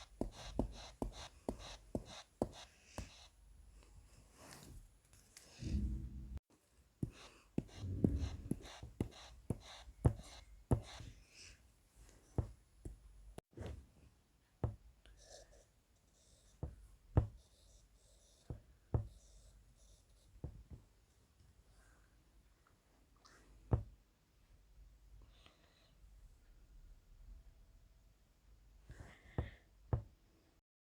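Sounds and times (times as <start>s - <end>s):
drawing tool tapping on paper: 0.0s - 3.3s, 7.0s - 11.0s, 16.6s - 17.4s, 18.5s - 19.2s
scratchy pencil strokes: 0.0s - 3.3s, 7.0s - 11.2s, 17.3s - 20.3s.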